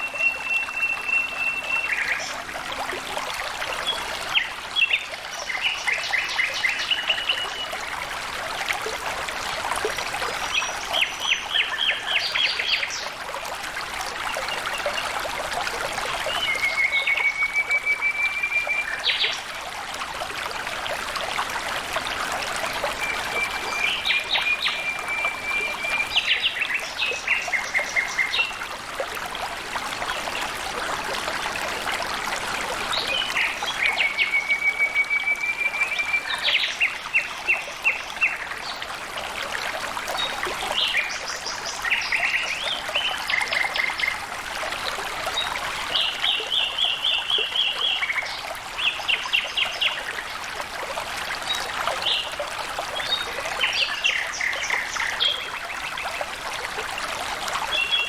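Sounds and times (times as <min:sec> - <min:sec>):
water trickling: 0:00.0 - 0:58.0.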